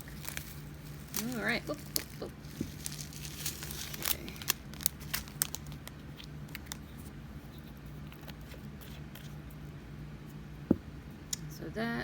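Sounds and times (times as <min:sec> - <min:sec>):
plastic bag rustling: 0:00.0 - 0:06.8.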